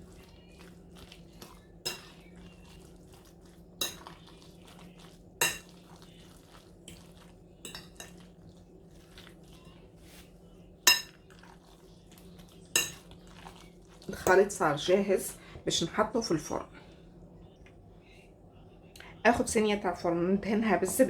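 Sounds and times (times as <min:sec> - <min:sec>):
utensil clinking against bowl: 0:00.6 - 0:02.8, 0:03.8 - 0:08.3, 0:10.8 - 0:11.6, 0:12.6 - 0:14.6.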